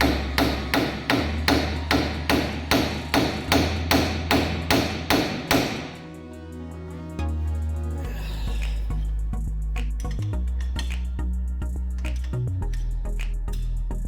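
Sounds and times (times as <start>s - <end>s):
hammer striking metal: 0.0s - 6.1s.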